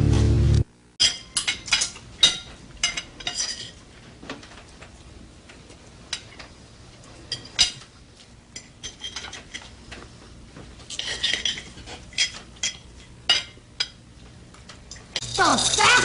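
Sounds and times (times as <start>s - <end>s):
cutlery clinking against dishes: 1.0s - 3.8s, 7.3s - 7.9s, 8.5s - 9.7s, 10.9s - 14.0s.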